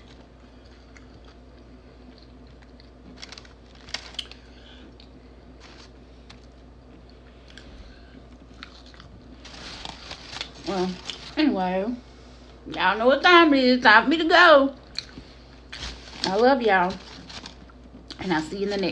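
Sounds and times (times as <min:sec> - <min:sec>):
person chewing: 0:00.0 - 0:11.3, 0:14.8 - 0:16.0
small clicks and crunches: 0:02.1 - 0:11.6, 0:14.9 - 0:18.9.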